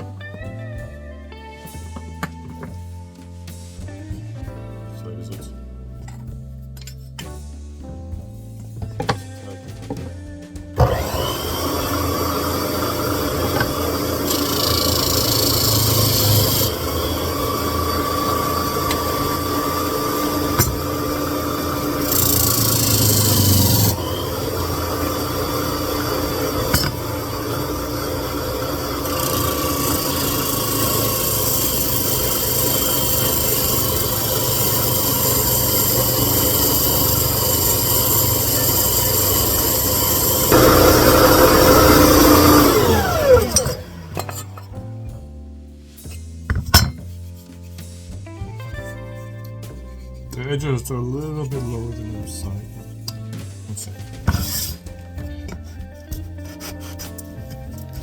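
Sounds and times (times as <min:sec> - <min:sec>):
power sander on wood: 0:10.8 - 0:44.4.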